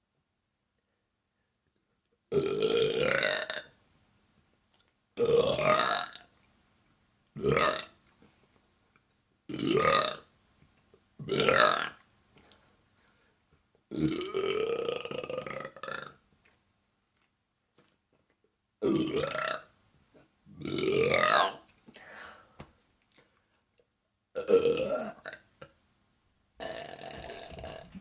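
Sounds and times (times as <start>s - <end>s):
woman burping: 24.4s - 25.4s, 26.6s - 28.0s.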